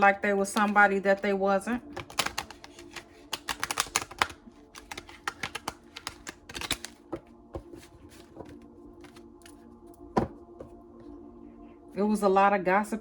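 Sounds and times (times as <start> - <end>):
irregular clicking and tapping: 2.0 - 9.6.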